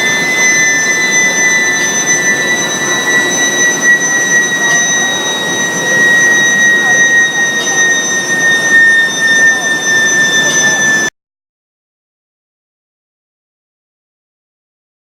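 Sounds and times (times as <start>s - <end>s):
high-pitched heater whine: 0.0s - 11.1s
rushing machine noise: 0.0s - 11.1s.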